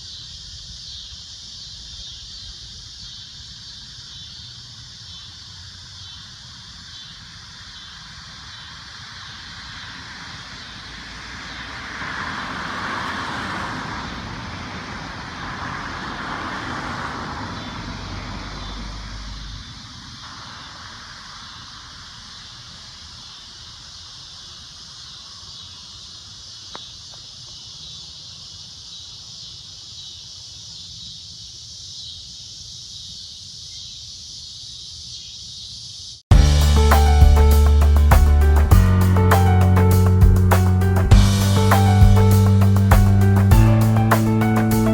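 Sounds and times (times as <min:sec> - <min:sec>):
cicadas droning: 0:00.0 - 0:44.9
rushing noise: 0:36.3 - 0:44.9.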